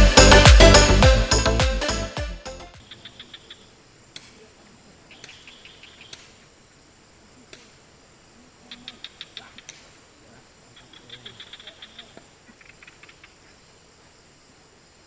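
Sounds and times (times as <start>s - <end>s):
music: 0.0s - 2.8s.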